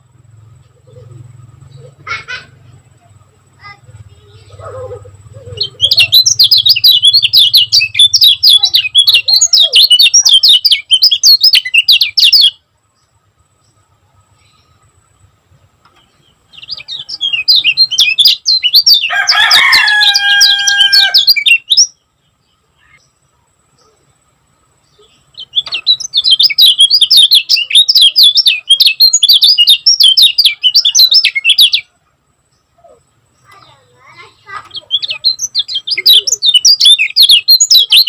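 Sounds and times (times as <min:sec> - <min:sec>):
bird chattering song: 0:00.0 - 0:38.0
lower drawn-out bird call: 0:16.7 - 0:21.7.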